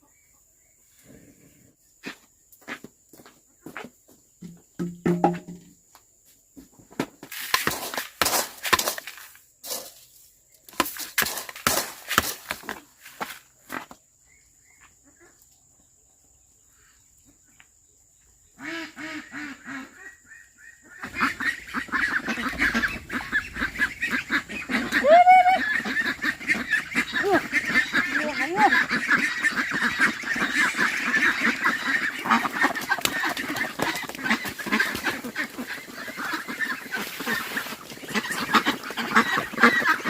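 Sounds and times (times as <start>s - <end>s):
sharp knocks and clatter: 4.4s - 5.7s, 21.1s - 24.9s
waterfowl calling: 18.6s - 40.0s.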